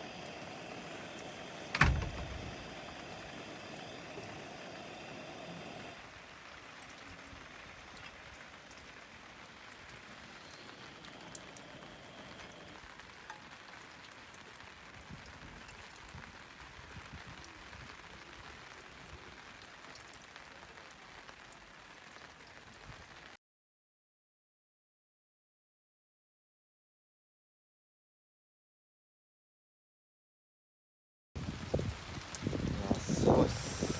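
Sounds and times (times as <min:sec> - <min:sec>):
steady rain falling: 0:00.0 - 0:23.4, 0:31.4 - 0:33.9.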